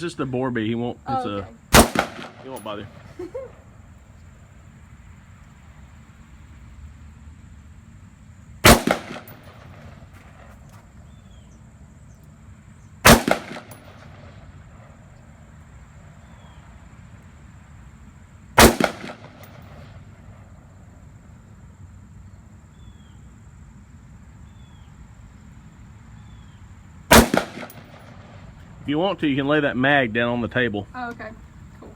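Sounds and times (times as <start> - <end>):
rifle shots with echo: 1.7 - 3.1, 8.6 - 10.5, 13.0 - 14.4, 18.6 - 20.0, 27.1 - 28.4.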